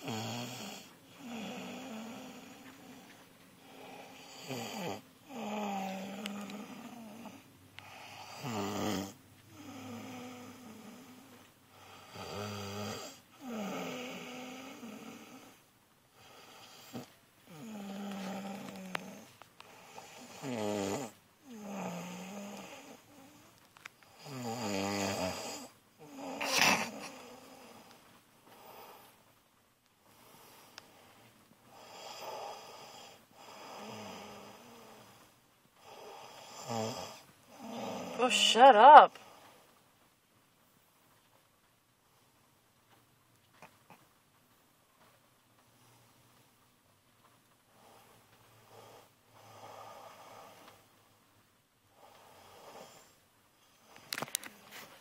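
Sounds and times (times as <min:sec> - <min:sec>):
heavy rasping snoring: 0:00.0 - 0:23.5, 0:24.1 - 0:28.0, 0:31.7 - 0:38.4, 0:47.8 - 0:50.8.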